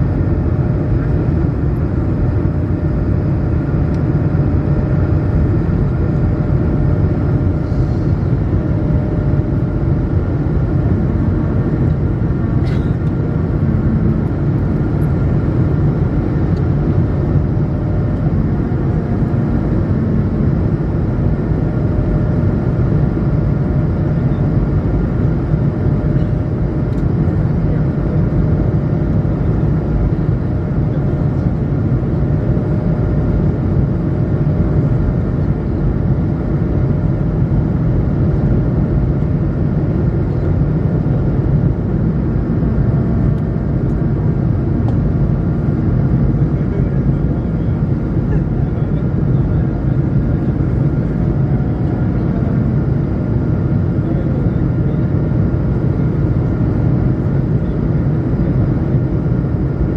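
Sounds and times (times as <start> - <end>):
aircraft cabin engine rumble: 0.0 - 59.9.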